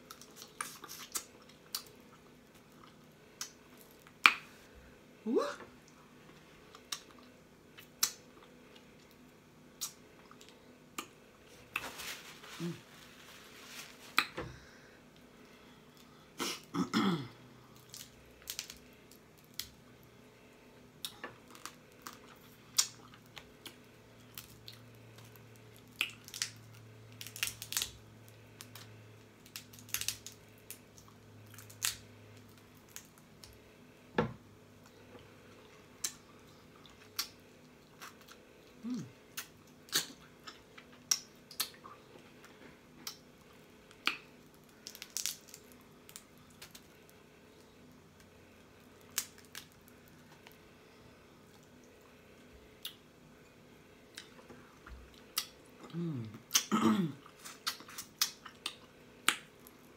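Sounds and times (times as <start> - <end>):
crab shells cracking: 17.8 - 19.8, 24.3 - 28.0, 28.6 - 30.8, 44.0 - 47.0, 49.0 - 50.6
low throat sound: 38.8 - 39.2, 55.8 - 57.2.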